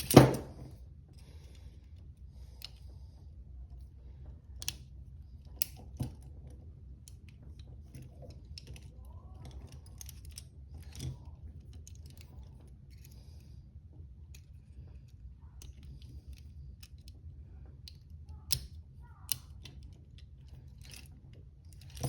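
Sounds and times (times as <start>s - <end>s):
handcuffs clicking and clinking: 0.0s - 0.5s, 4.6s - 4.8s, 5.6s - 6.2s, 7.1s - 13.2s, 17.9s - 21.1s
low steady hum: 0.0s - 22.0s.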